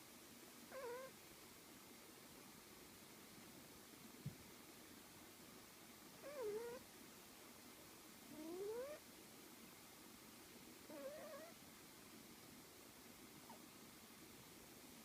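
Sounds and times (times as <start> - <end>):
cat snoring: 0.7 - 1.1, 6.2 - 6.8, 8.3 - 9.0, 10.9 - 11.6.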